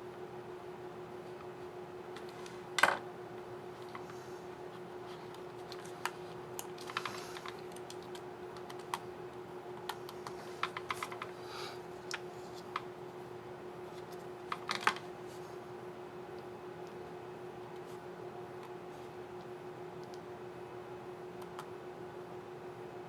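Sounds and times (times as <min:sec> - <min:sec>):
faint steady hum: 0:00.0 - 0:23.0
laptop keyboard keys clicking: 0:05.6 - 0:09.1.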